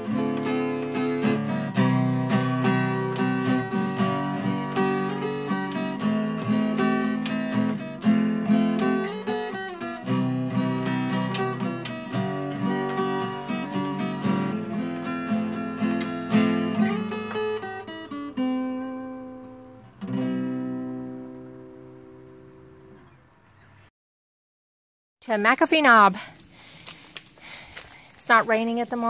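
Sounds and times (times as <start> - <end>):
strummed guitar chord: 0.0 - 23.0
acoustic guitar picking: 0.0 - 23.8.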